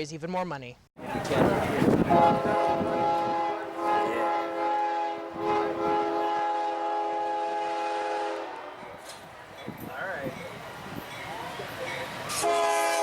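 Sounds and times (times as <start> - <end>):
train air horn chord: 2.0 - 9.1, 12.3 - 13.0.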